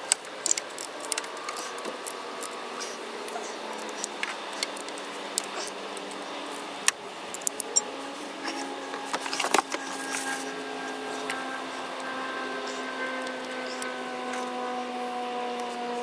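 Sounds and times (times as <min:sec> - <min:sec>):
metallic clicks of hand tools: 0:00.0 - 0:02.6, 0:06.8 - 0:07.9
steady background hum: 0:00.0 - 0:16.0.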